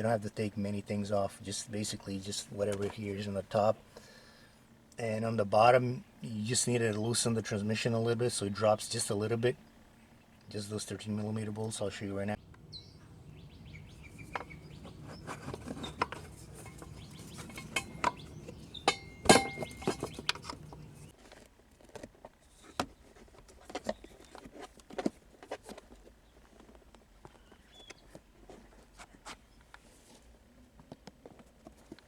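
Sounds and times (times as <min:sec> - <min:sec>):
hand tools clinking on metal: 0:13.0 - 0:21.1
sharp ringing metal clink: 0:16.3 - 0:20.2.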